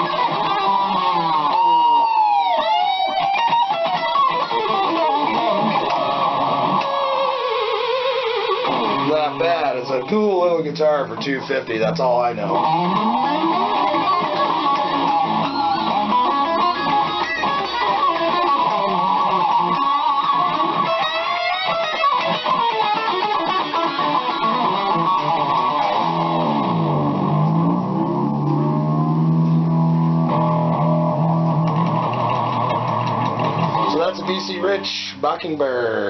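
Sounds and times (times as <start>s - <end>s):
electric guitar fast notes: 0.0s - 35.4s.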